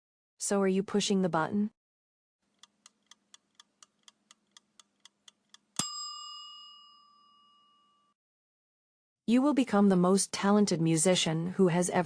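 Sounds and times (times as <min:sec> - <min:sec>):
timer ticking: 0:02.6 - 0:06.0
bell ding: 0:05.8 - 0:08.2.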